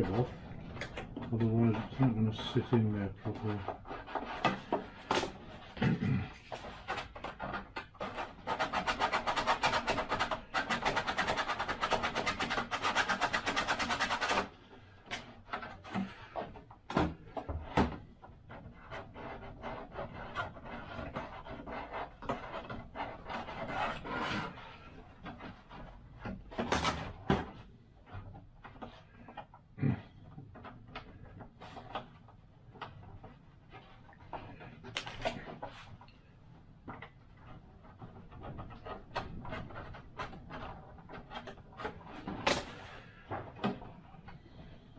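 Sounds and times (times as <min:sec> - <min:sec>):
scraping on plastic part: 0:00.0 - 0:44.9.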